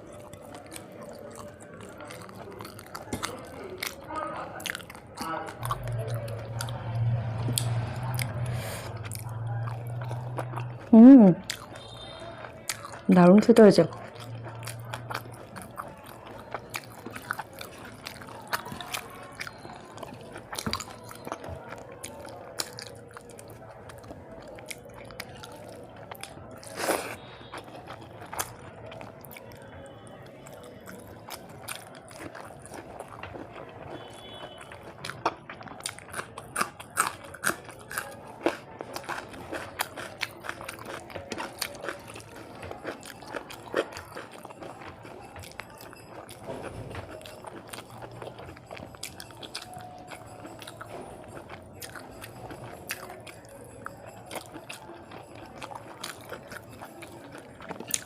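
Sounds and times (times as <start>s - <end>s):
person chewing food: 0.0s - 58.0s.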